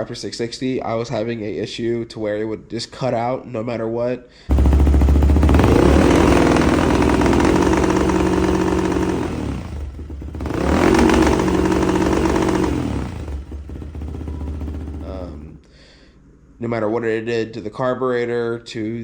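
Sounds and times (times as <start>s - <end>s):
quad engine revving: 4.5s - 15.6s.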